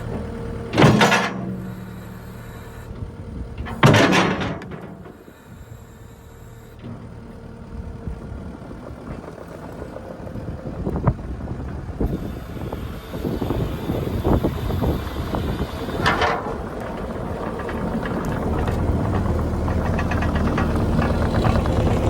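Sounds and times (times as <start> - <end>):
vehicle engine rumbling: 0.0 - 22.0.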